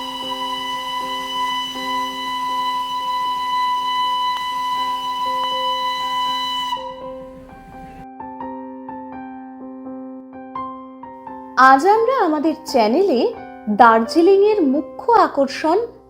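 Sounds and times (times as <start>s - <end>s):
steam hissing: 0.0s - 8.0s
steam locomotive whistle: 0.0s - 8.0s
piano music: 0.0s - 16.0s.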